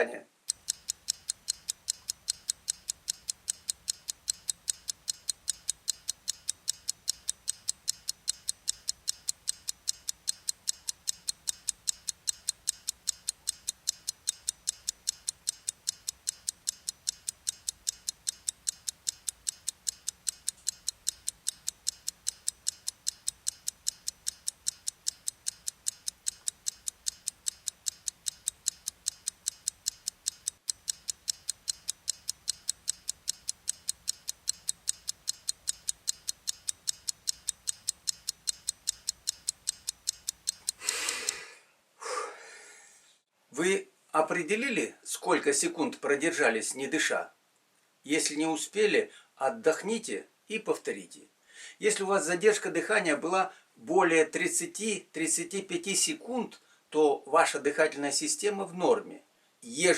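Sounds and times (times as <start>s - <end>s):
stopwatch ticking: 0.4s - 41.5s.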